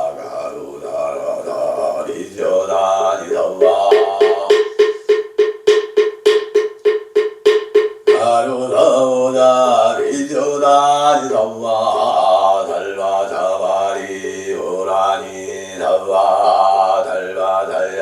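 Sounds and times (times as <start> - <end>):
man chanting: 0.0 - 4.9, 8.1 - 18.0
wooden fish drum struck in a roll: 3.6 - 8.3.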